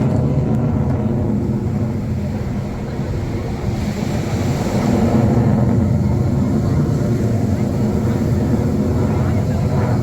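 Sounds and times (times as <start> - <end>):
jet aircraft rumble: 0.0 - 10.0.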